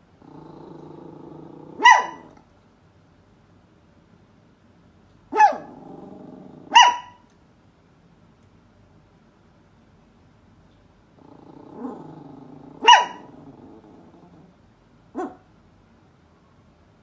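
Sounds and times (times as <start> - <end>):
dog growling low: 0.2 - 2.4, 5.5 - 6.8, 11.2 - 14.6
dog barking: 1.7 - 2.4, 5.3 - 5.8, 6.7 - 7.2, 12.8 - 13.3, 15.2 - 15.5.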